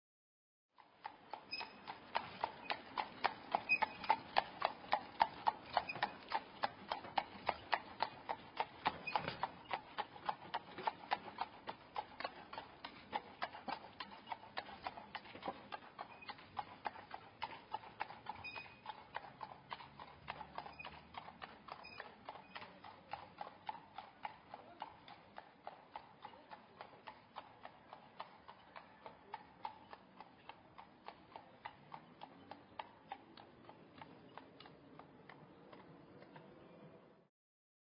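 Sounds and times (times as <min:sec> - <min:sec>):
horse hooves clip-clopping on stone: 0:00.8 - 0:36.5
cart wheels rumbling on stones: 0:01.0 - 0:25.0.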